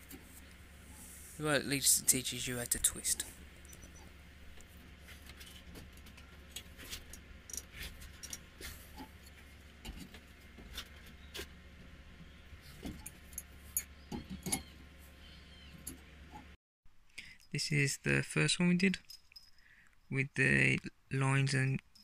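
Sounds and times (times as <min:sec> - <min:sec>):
steady low hum: 0:00.0 - 0:16.6.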